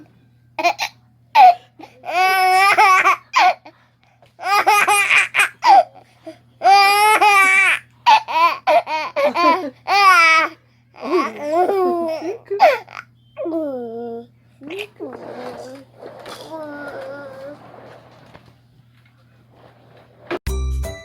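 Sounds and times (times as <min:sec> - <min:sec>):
child giggling: 0:08.3 - 0:10.4.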